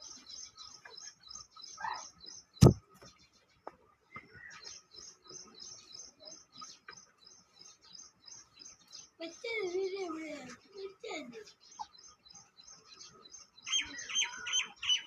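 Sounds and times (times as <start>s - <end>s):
sharp knock: 2.6s - 2.8s.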